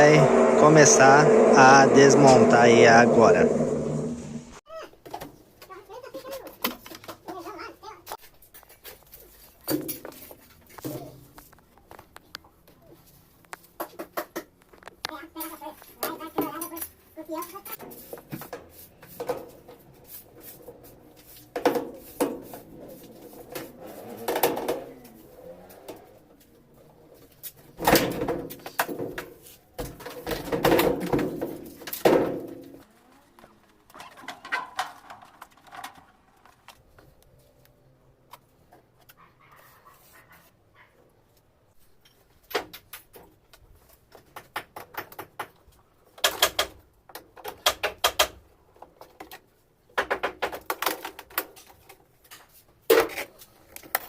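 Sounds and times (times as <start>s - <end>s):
plastic parts knocking and scraping: 17.7s - 25.1s, 27.2s - 32.9s, 33.7s - 37.1s, 42.0s - 54.0s.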